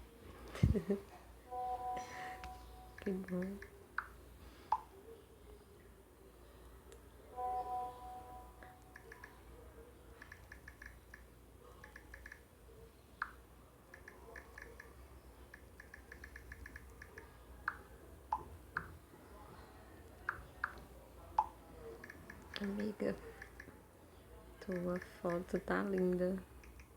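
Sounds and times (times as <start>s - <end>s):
smartphone keyboard clicking: 3.0s - 4.1s, 8.9s - 9.4s, 10.2s - 12.4s, 13.2s - 14.9s, 15.5s - 18.9s, 21.4s - 23.7s, 24.7s - 26.9s.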